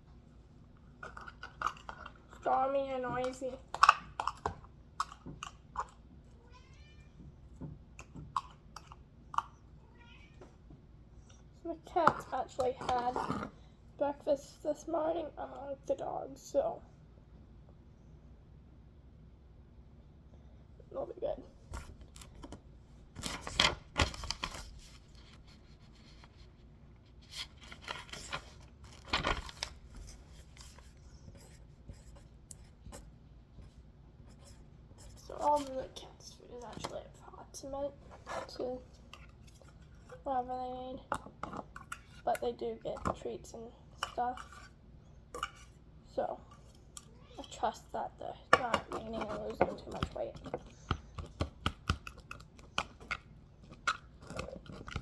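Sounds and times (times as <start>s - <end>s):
cat meowing: 6.4s - 7.2s, 9.8s - 10.4s
handling rustling and scraping: 21.5s - 43.2s, 43.9s - 47.6s, 48.5s - 55.0s.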